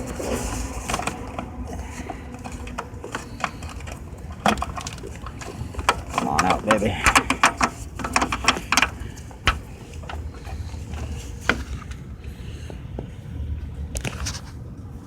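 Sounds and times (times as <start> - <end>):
low steady rumble: 0.0 - 15.0
hard plastic clicking: 0.1 - 12.0.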